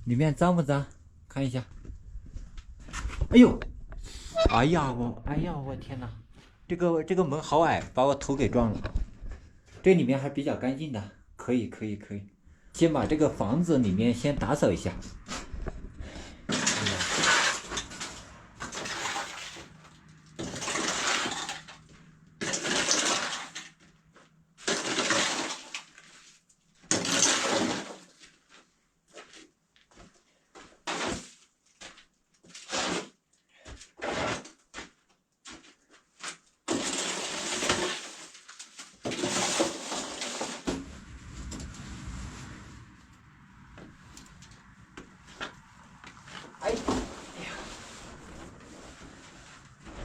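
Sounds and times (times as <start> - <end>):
broom sweeping a floor: 46.8 - 50.0.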